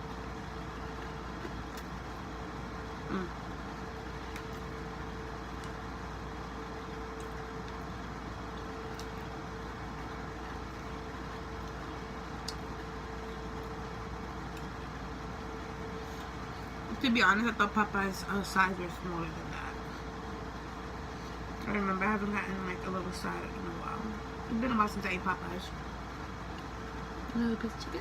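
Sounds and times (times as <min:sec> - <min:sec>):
steady hum with constant tone: 0:00.0 - 0:28.0
person chewing: 0:08.5 - 0:09.4.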